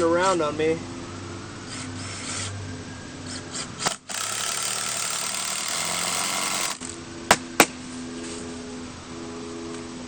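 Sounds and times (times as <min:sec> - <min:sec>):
power tool running: 0:03.8 - 0:07.0
sharp knocks: 0:07.3 - 0:07.8.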